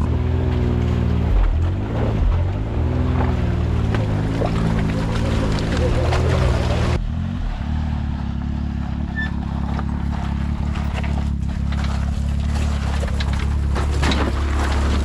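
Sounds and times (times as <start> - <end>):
engine running: 0.0 - 15.0
water splashing: 1.0 - 7.0.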